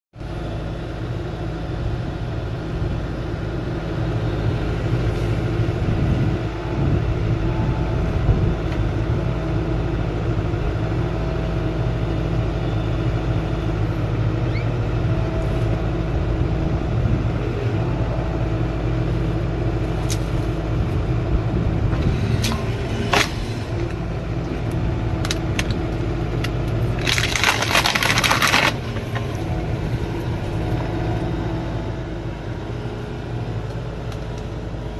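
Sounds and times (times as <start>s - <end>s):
diesel engine running: 0.2s - 34.9s
wood cracking: 26.4s - 29.6s
tree falling with crackling rush: 26.8s - 29.6s.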